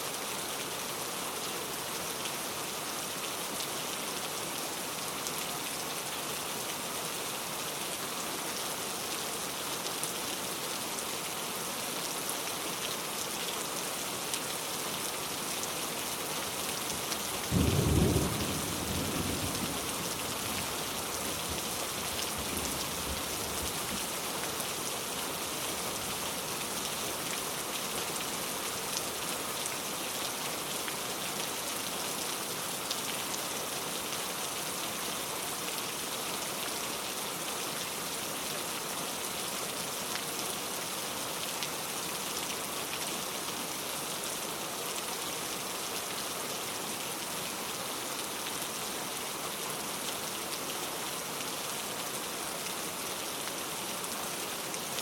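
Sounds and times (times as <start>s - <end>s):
heavy rain pattering: 16.1s - 25.9s.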